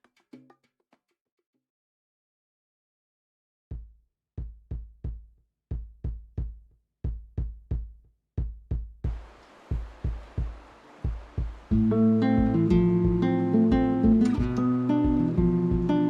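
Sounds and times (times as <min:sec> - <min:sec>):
bass drum beat: 0:03.7 - 0:16.0.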